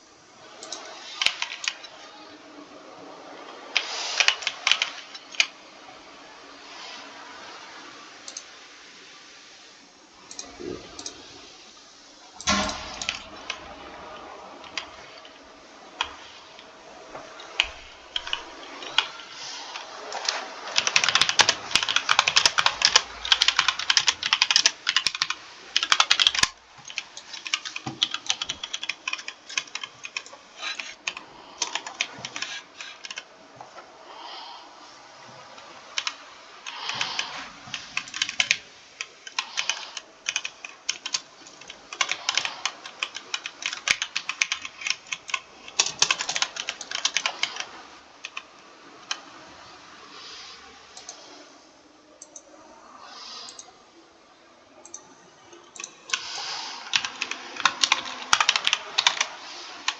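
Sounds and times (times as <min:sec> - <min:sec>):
typing on computer keyboard: 0:00.6 - 0:01.9, 0:03.7 - 0:05.6, 0:12.4 - 0:16.6, 0:17.2 - 0:33.3, 0:36.0 - 0:49.2, 0:54.8 - 0:59.9.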